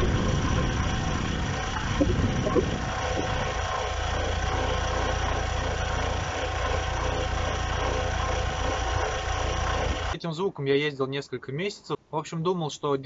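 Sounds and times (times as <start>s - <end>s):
car engine idling: 0.0s - 10.2s
water pump whine: 0.0s - 10.2s.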